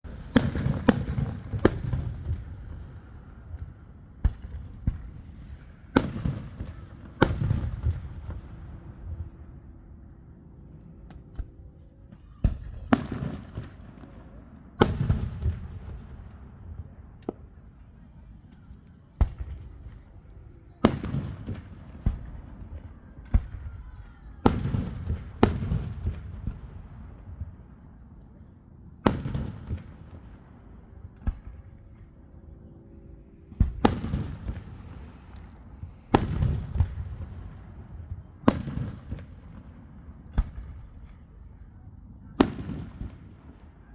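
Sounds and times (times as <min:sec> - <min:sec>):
fireworks bangs: 0:00.0 - 0:08.9, 0:33.7 - 0:39.2.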